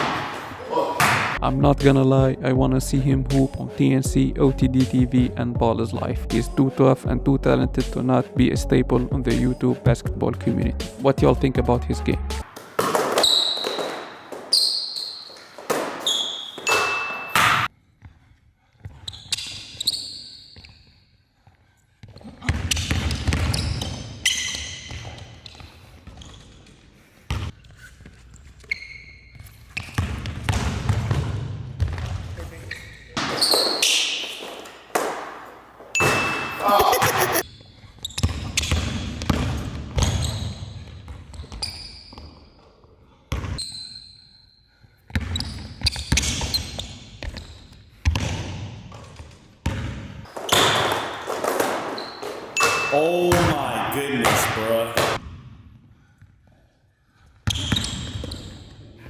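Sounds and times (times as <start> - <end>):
basketball bouncing on court: 0.0 - 1.4, 12.5 - 18.1, 22.0 - 26.4, 27.3 - 27.5, 29.8 - 32.5, 38.1 - 42.3, 43.3 - 43.6, 45.1 - 53.6
shoe squeaks: 12.8 - 17.7, 18.9 - 21.2, 22.0 - 26.8, 27.6 - 30.1, 32.5 - 38.9, 40.0 - 42.6, 43.6 - 47.7, 50.3 - 53.2, 57.5 - 58.8.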